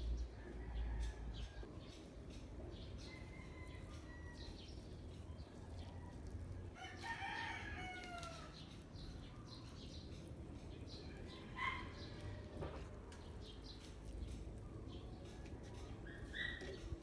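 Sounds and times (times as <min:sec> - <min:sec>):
steady background noise: 0:00.0 - 0:17.0
rooster crowing: 0:03.1 - 0:04.6, 0:05.9 - 0:08.6.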